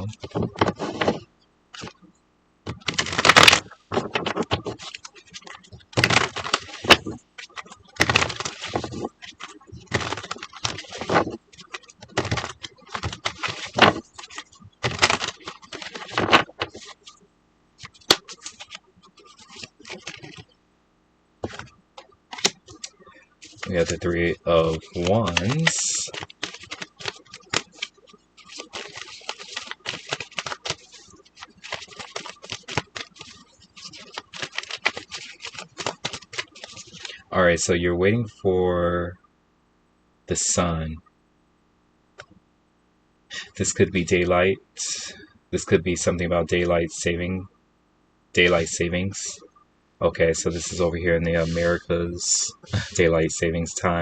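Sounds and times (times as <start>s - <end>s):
cards being shuffled: 0.0s - 2.0s, 2.7s - 17.1s, 17.8s - 20.5s, 21.4s - 21.7s, 22.3s - 37.2s, 50.4s - 53.1s.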